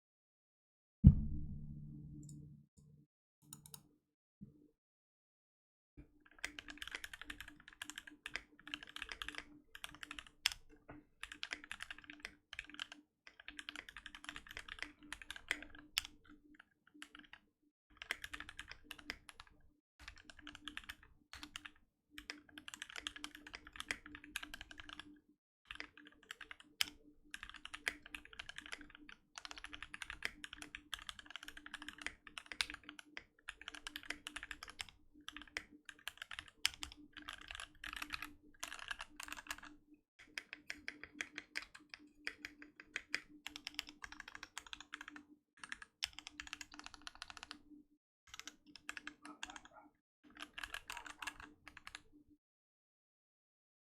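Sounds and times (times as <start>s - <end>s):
mechanical keyboard typing: 3.5s - 3.8s, 6.3s - 10.6s, 11.2s - 16.4s, 18.0s - 25.1s, 25.7s - 47.6s, 48.3s - 52.1s.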